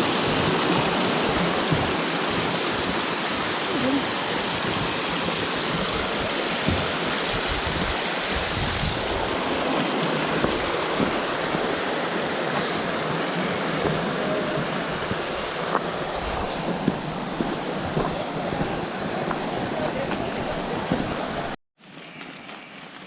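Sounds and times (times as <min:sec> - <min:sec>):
creek water rushing: 0:00.0 - 0:23.0.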